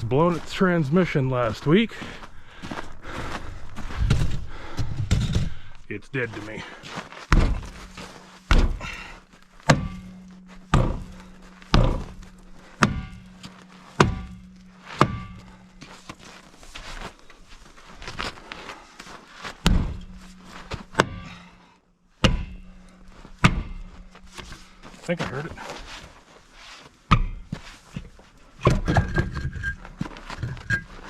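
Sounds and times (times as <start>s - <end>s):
hammer striking truck wheel: 7.3s - 16.2s, 19.6s - 21.6s, 22.2s - 24.6s, 27.1s - 27.6s.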